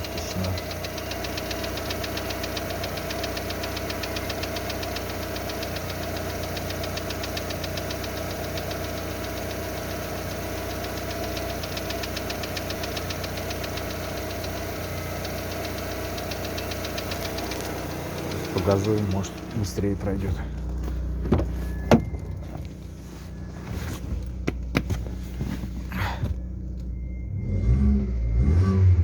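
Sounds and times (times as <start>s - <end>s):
valve-train ticking knock: 0.0s - 20.2s
car engine idling loudly: 0.0s - 27.0s.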